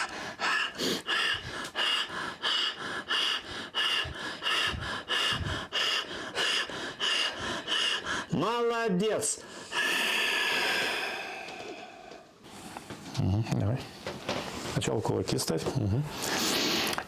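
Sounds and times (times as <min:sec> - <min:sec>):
woman breathing rapidly: 0:00.0 - 0:08.4, 0:09.4 - 0:12.5.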